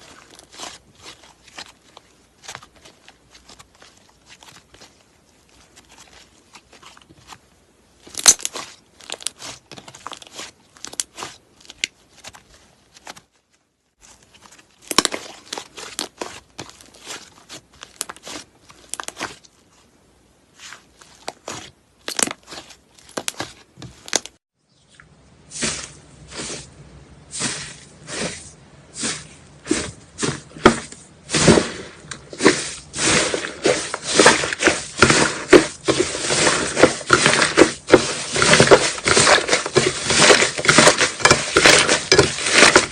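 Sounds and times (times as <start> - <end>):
faint steady hum: 0.0 - 36.2
slime crackling and popping: 8.0 - 12.4, 14.8 - 19.4, 21.0 - 24.4.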